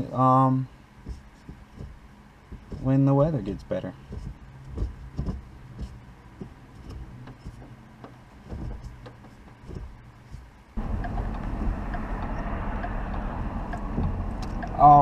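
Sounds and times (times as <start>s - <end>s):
road and engine noise in car: 0.0s - 15.0s
light knocks and handling: 1.0s - 3.0s, 4.0s - 11.3s
low hum: 3.9s - 15.0s.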